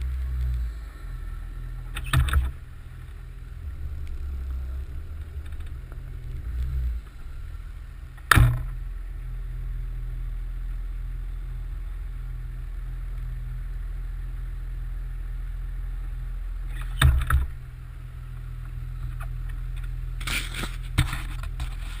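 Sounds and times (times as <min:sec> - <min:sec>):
diesel engine low rumble: 0:00.0 - 0:22.0
loud sharp knocks: 0:08.3 - 0:08.7.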